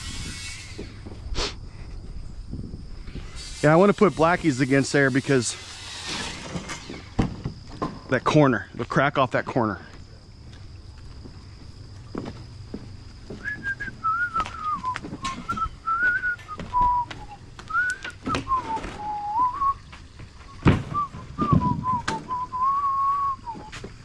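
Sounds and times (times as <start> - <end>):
work knocks and thuds: 6.1 - 8.1, 20.2 - 22.6
person whistling a tune: 13.4 - 19.9, 20.9 - 23.8.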